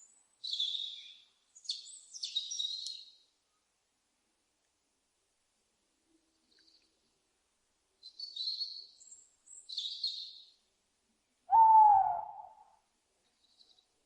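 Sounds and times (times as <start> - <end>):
owl screeching: 11.5 - 12.7
owl low clear call: 11.5 - 12.8.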